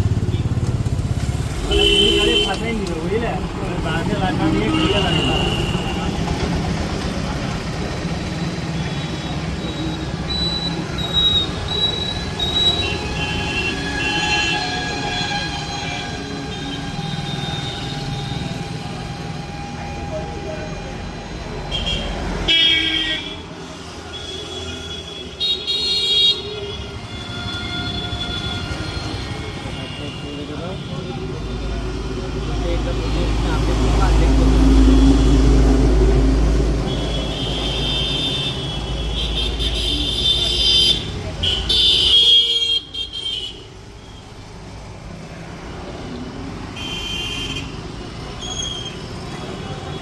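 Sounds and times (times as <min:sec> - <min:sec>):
road traffic noise: 0:00.0 - 0:50.0
vehicle horns: 0:01.6 - 0:02.9, 0:04.0 - 0:06.2, 0:08.7 - 0:19.0, 0:21.7 - 0:31.3, 0:36.8 - 0:44.4, 0:46.7 - 0:50.0
vehicle horn honking: 0:01.7 - 0:02.7, 0:46.8 - 0:47.8.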